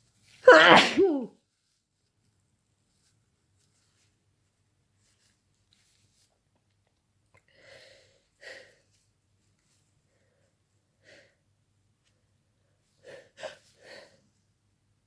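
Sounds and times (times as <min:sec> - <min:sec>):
person sneezing: 0:00.4 - 0:01.3.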